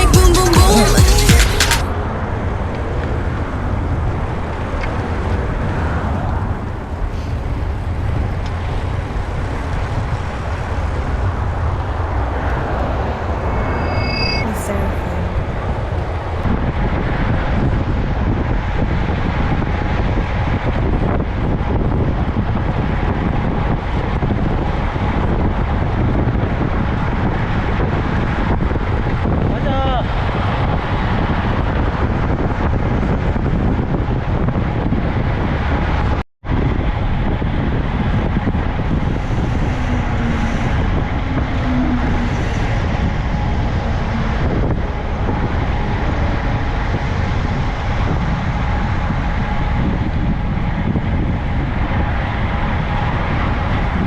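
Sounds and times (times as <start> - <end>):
wind buffeting microphone: 1.9 - 14.2, 15.2 - 54.0.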